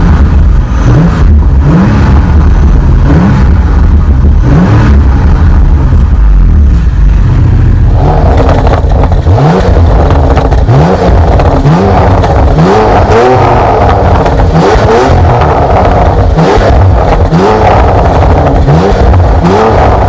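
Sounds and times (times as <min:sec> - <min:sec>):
car engine revving: 0:00.0 - 0:20.0
exhaust crackling pops and bangs: 0:08.2 - 0:20.0.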